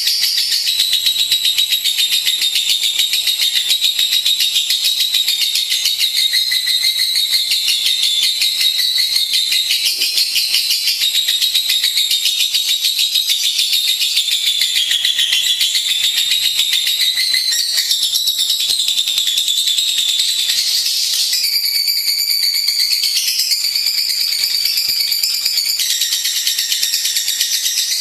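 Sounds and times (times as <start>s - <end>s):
lovebird chattering twitter: 0.2s - 12.9s, 13.6s - 21.6s.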